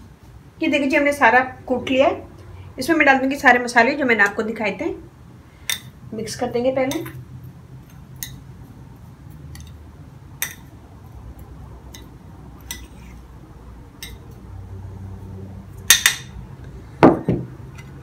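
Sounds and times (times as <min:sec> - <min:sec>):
utensils clinking against dishes: 0:06.9 - 0:07.2, 0:11.4 - 0:13.2, 0:14.0 - 0:14.4.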